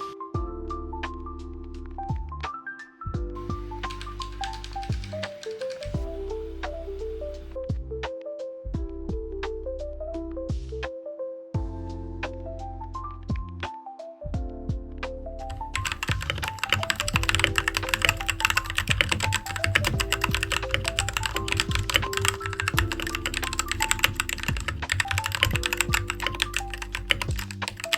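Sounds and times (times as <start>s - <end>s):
background music: 0.0s - 27.9s
fast keyboard typing: 3.5s - 6.0s, 15.6s - 27.9s.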